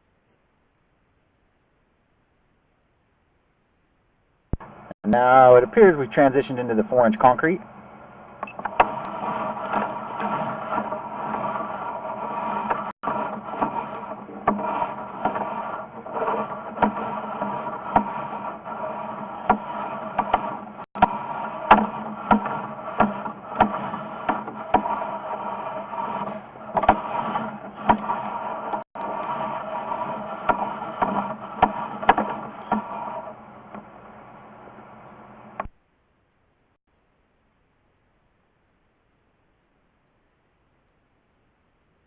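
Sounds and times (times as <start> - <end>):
steady hum: 0.0 - 42.0
cable clicking and scraping: 8.4 - 33.9.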